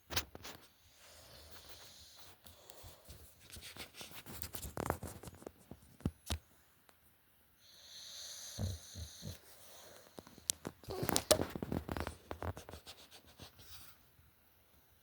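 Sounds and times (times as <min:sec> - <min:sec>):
soft rustling: 0:10.0 - 0:14.1.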